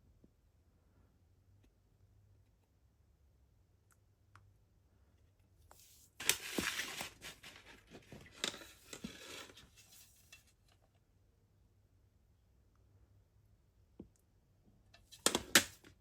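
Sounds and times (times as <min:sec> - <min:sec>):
packaging crinkling and rustling: 0:06.2 - 0:09.8.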